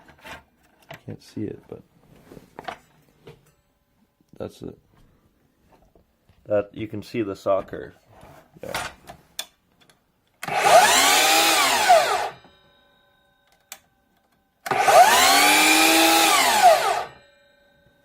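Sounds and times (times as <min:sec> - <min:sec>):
miter saw blade whining: 0:10.4 - 0:12.4, 0:14.7 - 0:17.2.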